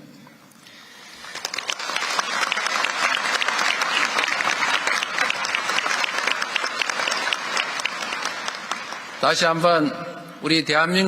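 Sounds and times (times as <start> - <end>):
audience applauding: 1.1 - 9.6.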